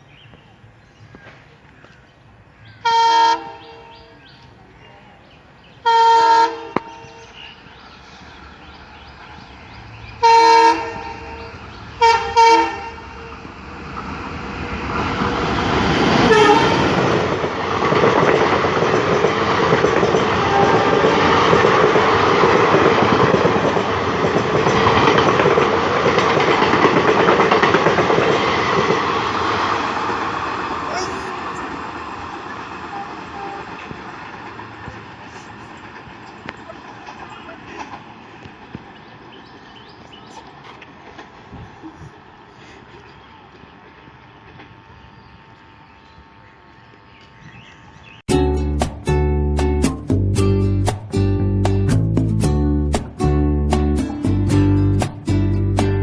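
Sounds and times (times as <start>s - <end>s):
train rushing past: 2.2s - 45.4s
train horn blasts: 2.8s - 4.2s, 5.8s - 7.6s, 10.2s - 13.6s, 16.1s - 17.2s, 20.2s - 21.9s, 32.8s - 33.9s
wheels clattering over rails: 6.7s - 41.7s.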